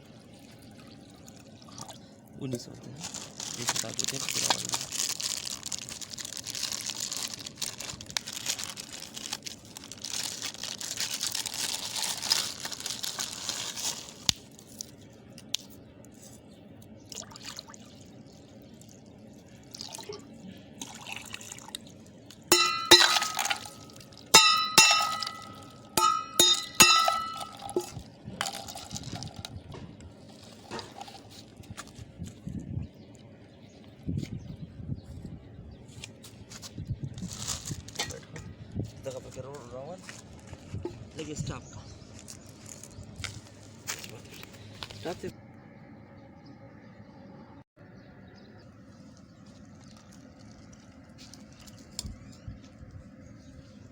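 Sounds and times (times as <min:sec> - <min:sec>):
kitchenware clinking: 0:22.5 - 0:28.8.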